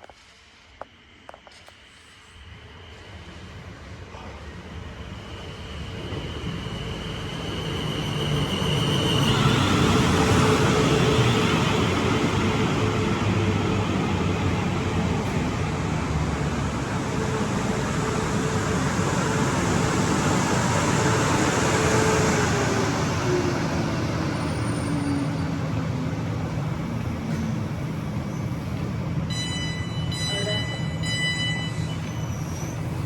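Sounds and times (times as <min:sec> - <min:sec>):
train wheels rumbling on rail: 0:00.0 - 0:33.0.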